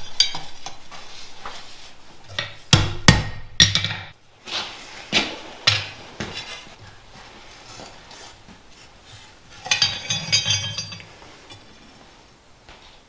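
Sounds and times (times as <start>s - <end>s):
steel pieces clanking: 9.5s - 11.7s.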